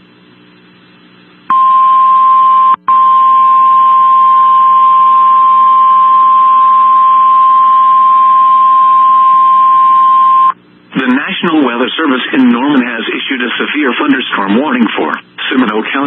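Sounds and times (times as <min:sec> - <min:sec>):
steady alarm tone: 0:01.5 - 0:10.6.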